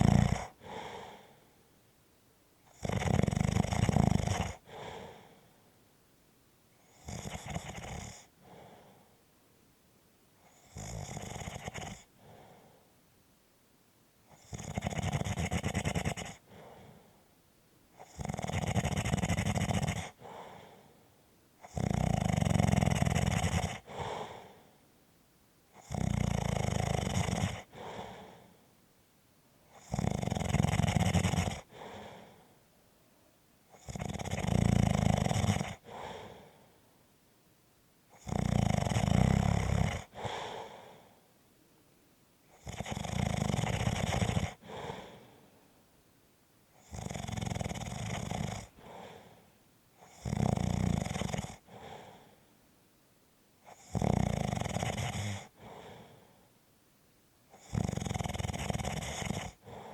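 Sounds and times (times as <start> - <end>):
loud snoring: 0.0 - 1.2, 2.7 - 5.3, 6.8 - 9.0, 10.4 - 12.7, 14.3 - 17.0, 18.0 - 20.9, 21.6 - 24.6, 25.8 - 28.5, 29.7 - 32.4, 33.7 - 36.6, 38.1 - 41.1, 42.5 - 45.4, 46.8 - 49.4, 50.0 - 52.4, 53.6 - 56.3, 57.5 - 59.9
soft breath out: 0.0 - 1.8, 4.6 - 5.8, 8.3 - 9.3, 12.0 - 13.0, 16.4 - 17.3, 20.1 - 21.2, 23.8 - 24.9, 27.6 - 28.8, 31.6 - 32.8, 35.8 - 37.0, 40.1 - 41.4, 44.5 - 45.8, 48.6 - 50.1, 51.6 - 52.6, 55.5 - 56.5, 59.6 - 59.9.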